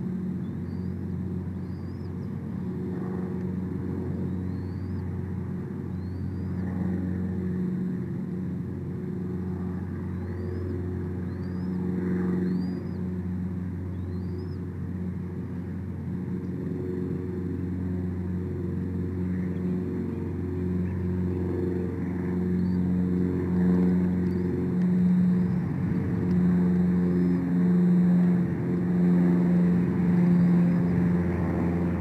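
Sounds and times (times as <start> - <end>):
low mechanical hum: 0.0 - 32.0
bird whistled calls: 4.3 - 5.0, 13.9 - 14.6.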